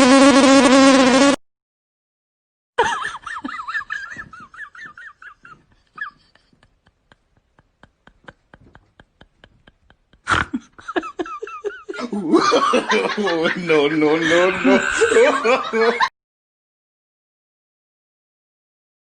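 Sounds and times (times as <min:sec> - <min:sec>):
warbling laugh-like voice: 0:08.2 - 0:16.1.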